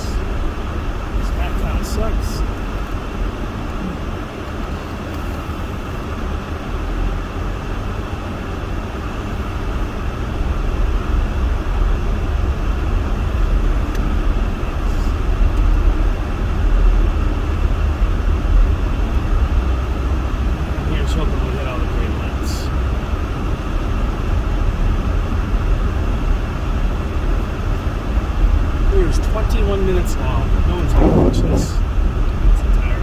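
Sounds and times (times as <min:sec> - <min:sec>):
van driving rumble: 0:00.0 - 0:33.0
constant hiss: 0:01.1 - 0:05.6.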